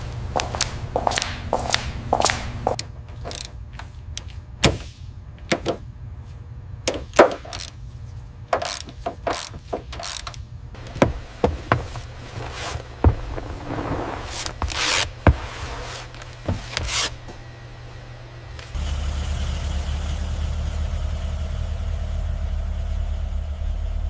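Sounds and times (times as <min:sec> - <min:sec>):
steady low hum: 0:00.0 - 0:24.0
hand tools clicking on metal: 0:02.8 - 0:04.3, 0:06.9 - 0:07.8, 0:08.6 - 0:11.2.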